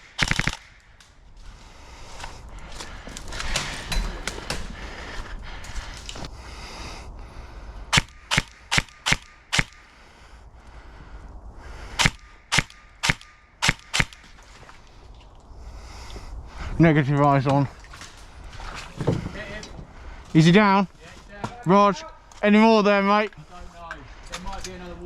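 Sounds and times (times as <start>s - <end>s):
airsoft gun single shots: 7.9s - 9.9s, 12.0s - 14.3s.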